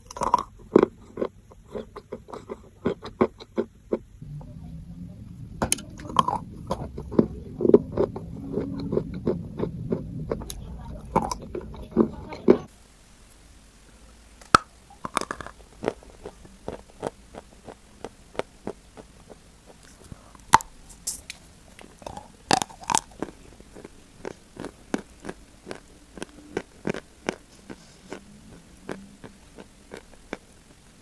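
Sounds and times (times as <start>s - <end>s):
person chewing chalk: 0.0s - 4.2s, 15.1s - 20.7s, 22.0s - 30.8s.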